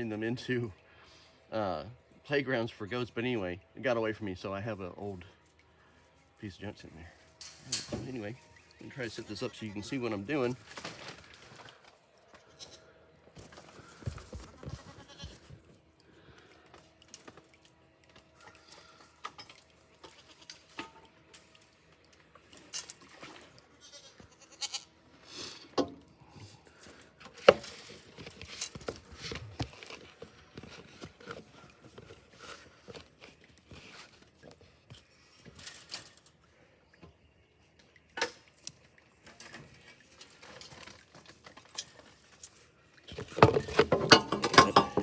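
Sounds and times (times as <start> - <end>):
goats bleating: 14.8 - 15.5, 23.7 - 24.9
knocks and clatter: 43.2 - 45.0.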